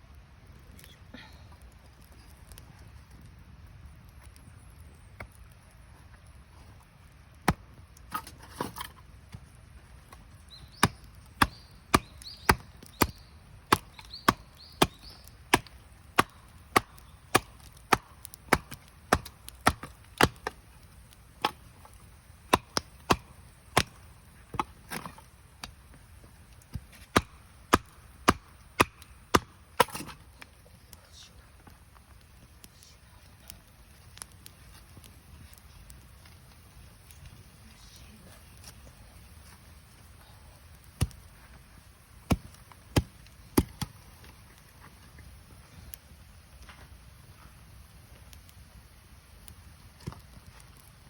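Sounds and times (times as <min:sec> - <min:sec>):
wood being chopped: 0:07.4 - 0:09.4, 0:10.1 - 0:20.6, 0:21.4 - 0:25.8, 0:26.6 - 0:30.2, 0:40.9 - 0:41.2, 0:42.2 - 0:44.0.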